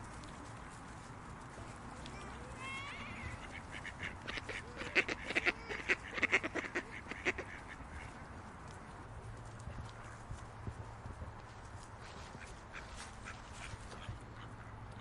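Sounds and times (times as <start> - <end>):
low outdoor background hum: 0.0 - 15.0
ducks quacking: 2.2 - 8.2, 12.1 - 15.0.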